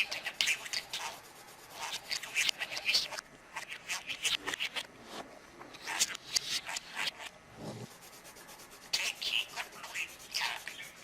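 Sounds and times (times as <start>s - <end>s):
budgerigar chattering: 0.0s - 4.9s, 8.9s - 11.0s.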